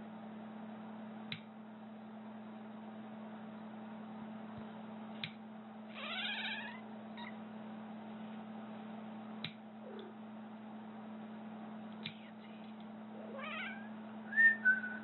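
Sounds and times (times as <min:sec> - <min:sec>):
cat crying: 0:05.9 - 0:07.4, 0:13.2 - 0:14.0
low hum: 0:06.5 - 0:15.0.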